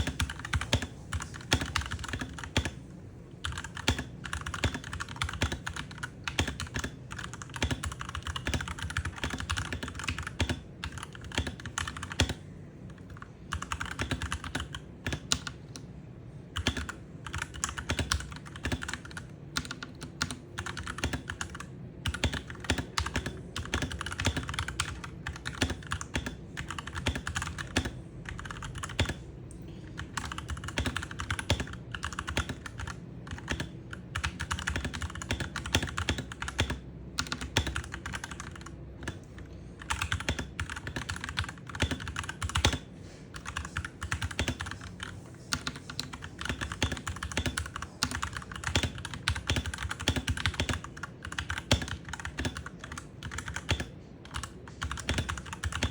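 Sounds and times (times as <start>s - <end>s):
mechanical keyboard key clicks: 45.5s - 55.9s.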